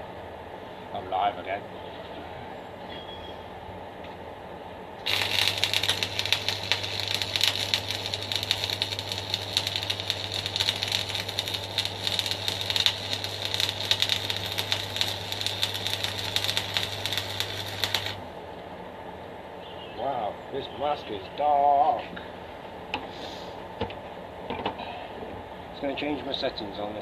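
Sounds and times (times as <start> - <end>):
welding arc crackling and sizzling: 5.0 - 18.3
welder humming: 5.0 - 18.4.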